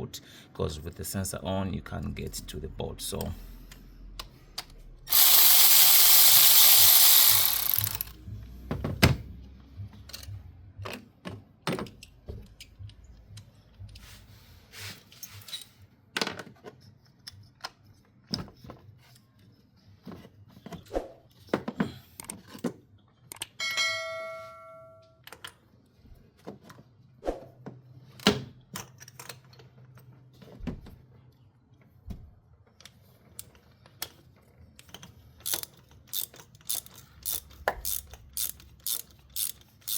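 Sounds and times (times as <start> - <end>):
metal tools clicking and knocking: 34.8 - 39.9.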